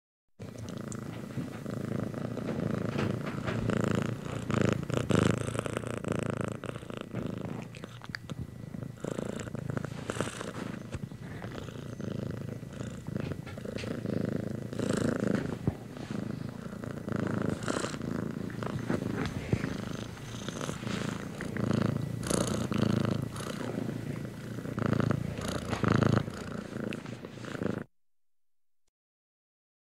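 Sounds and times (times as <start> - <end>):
cat purring: 0.4 - 27.9
hand stroking fur: 9.7 - 23.9.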